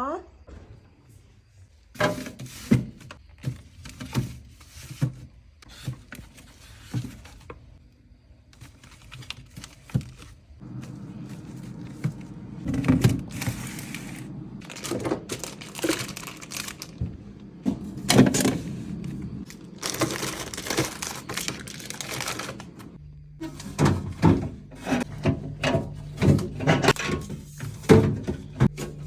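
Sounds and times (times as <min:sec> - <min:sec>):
plastic packaging crinkling: 0:08.6 - 0:12.3, 0:13.2 - 0:17.0, 0:19.4 - 0:23.0
items knocking: 0:09.8 - 0:22.7, 0:23.7 - 0:29.0
steady low hum: 0:10.6 - 0:14.8.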